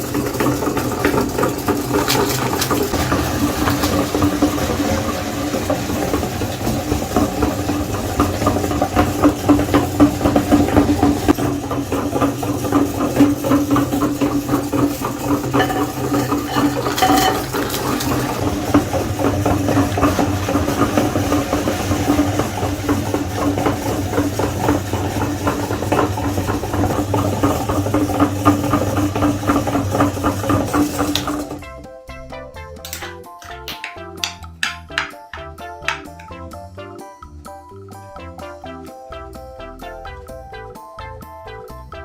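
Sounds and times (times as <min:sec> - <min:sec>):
food crackling in grinder: 0:00.0 - 0:31.6
meat grinder motor humming: 0:00.0 - 0:31.6.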